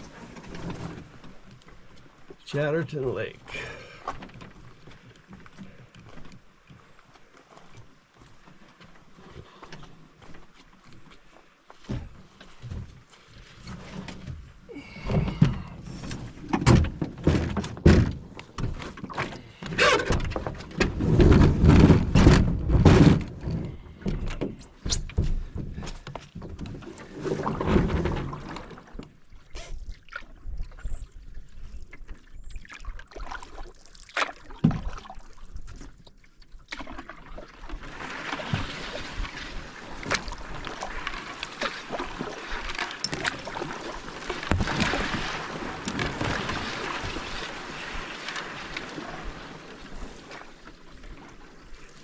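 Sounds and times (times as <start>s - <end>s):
water and wind rushing: 0.0s - 52.0s
paddle thumps against canoe hull: 15.0s - 24.5s.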